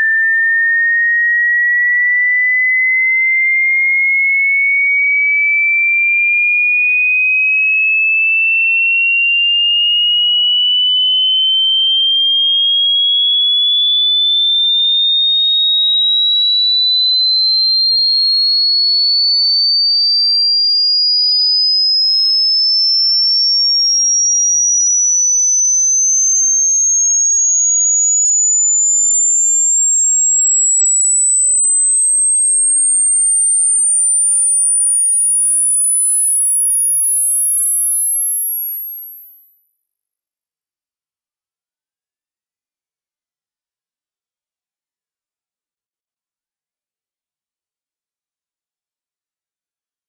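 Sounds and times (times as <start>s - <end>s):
rising pure tone sweep: 25.9s - 45.5s.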